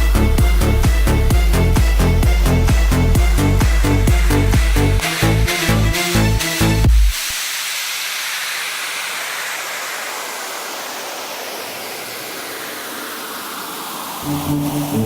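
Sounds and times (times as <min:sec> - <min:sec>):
electronic music: 0:00.0 - 0:15.0
steady hiss: 0:06.9 - 0:15.0.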